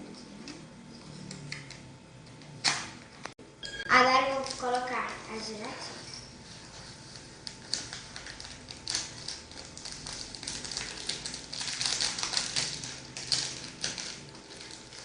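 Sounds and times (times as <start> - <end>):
powder sachet crinkling: 7.2 - 15.0.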